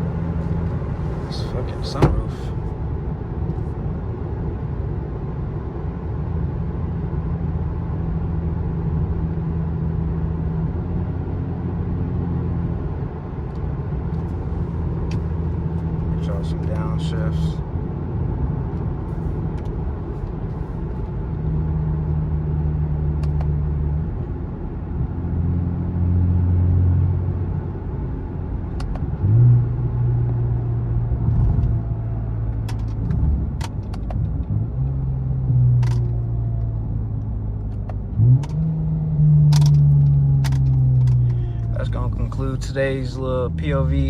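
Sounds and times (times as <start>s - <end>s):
car exhaust droning: 28.4s - 44.0s.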